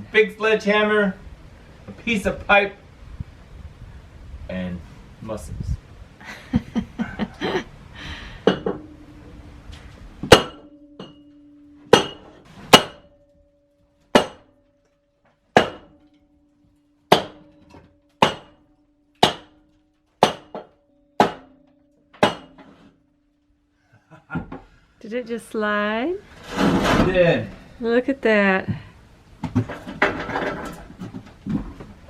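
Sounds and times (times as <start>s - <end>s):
sledgehammer striking metal pipe: 8.5s - 9.4s, 10.2s - 14.7s, 15.5s - 23.3s
light metal clatter: 29.5s - 32.0s.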